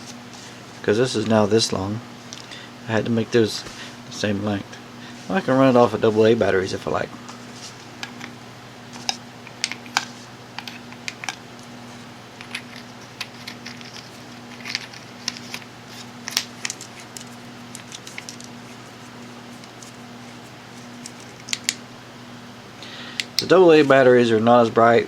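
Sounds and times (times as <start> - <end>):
steady low hum: 0.0 - 25.0
batteries clicking and clinking: 12.4 - 21.8.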